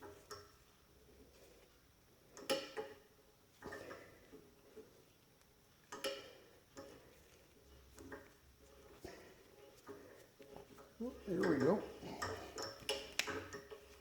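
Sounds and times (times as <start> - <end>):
metal tap clicking and creaking: 5.9 - 8.4, 9.8 - 14.0.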